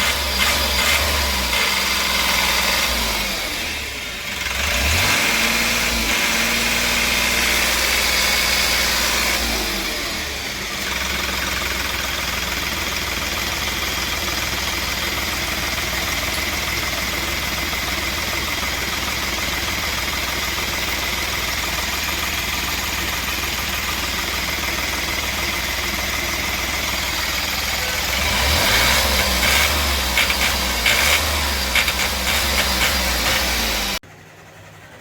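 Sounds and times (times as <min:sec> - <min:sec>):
diesel engine running unevenly: 0:00.0 - 0:35.0
engine knocks: 0:10.9 - 0:34.0.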